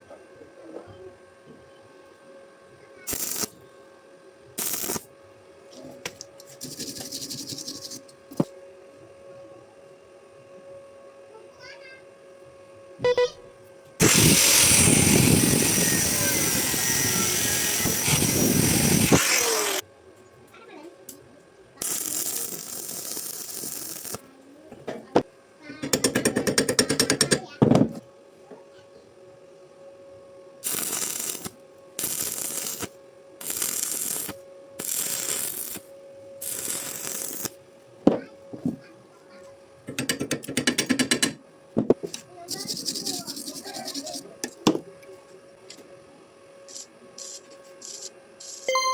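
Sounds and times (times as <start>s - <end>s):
welding arc crackling: 3.1s - 3.6s, 4.6s - 5.1s, 14.0s - 19.8s, 21.8s - 24.3s, 30.6s - 37.6s.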